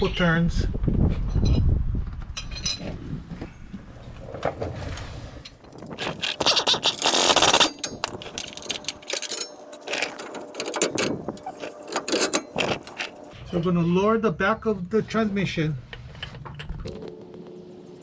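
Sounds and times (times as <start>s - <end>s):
loud rasping scrape: 5.6s - 13.3s
metal hand tools clicking and scraping: 5.6s - 13.4s.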